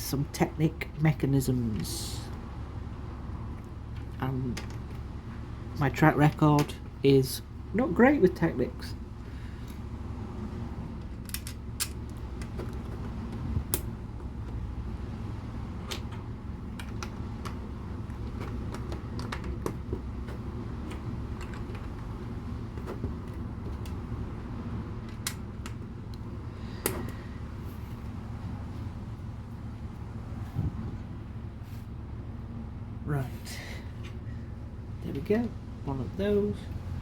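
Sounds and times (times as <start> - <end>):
steady low hum: 0.0 - 37.0.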